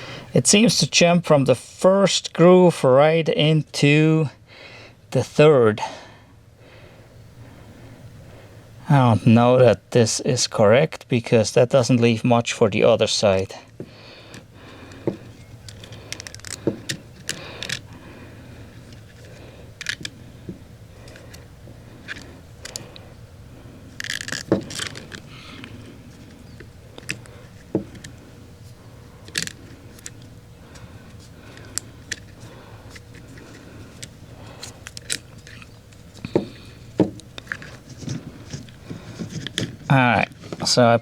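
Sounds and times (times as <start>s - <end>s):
cable handling clicks and rattles: 14.3s - 18.0s, 18.7s - 23.0s, 23.9s - 28.3s, 29.2s - 40.7s.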